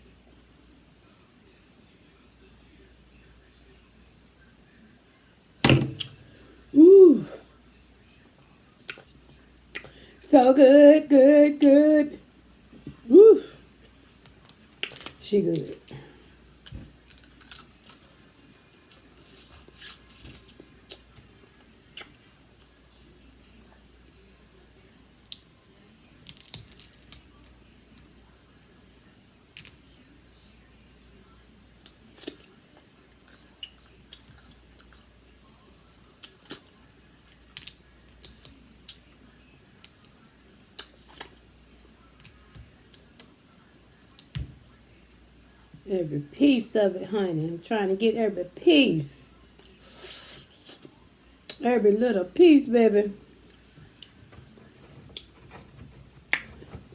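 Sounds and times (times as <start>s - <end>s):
crab shell cracking: 14.3s - 15.2s, 26.2s - 27.3s, 37.4s - 39.0s
close chewing: 17.1s - 21.2s, 53.4s - 56.9s.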